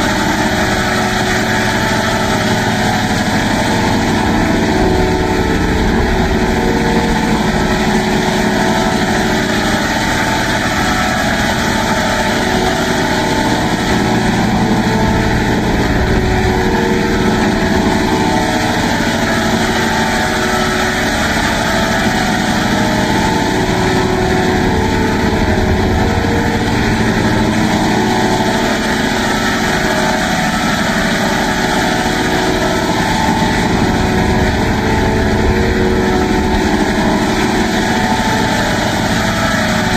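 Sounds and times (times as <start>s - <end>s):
processed droning noise: 0.0s - 39.9s.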